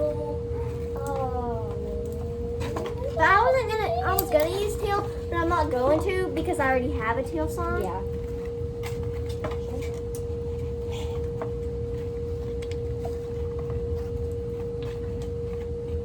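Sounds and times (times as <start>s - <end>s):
low rumble: 0.0s - 8.3s
steady hum-like tone: 0.0s - 16.0s.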